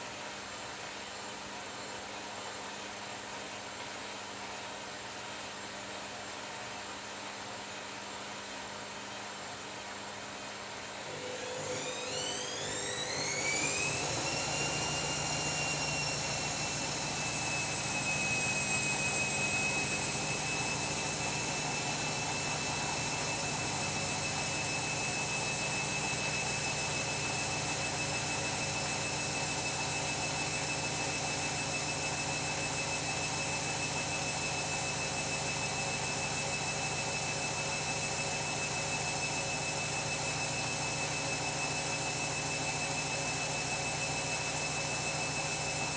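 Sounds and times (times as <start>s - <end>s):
washing machine spin whine: 10.6s - 45.9s.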